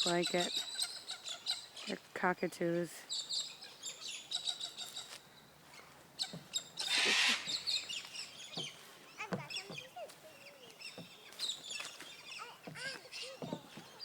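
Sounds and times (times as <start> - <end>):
cockatoos chirping: 0.0 - 14.0
cockatoo harsh screech: 6.8 - 7.7.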